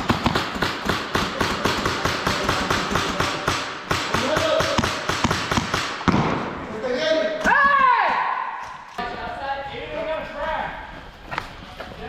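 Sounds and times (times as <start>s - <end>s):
airsoft guns firing: 0.0s - 6.6s.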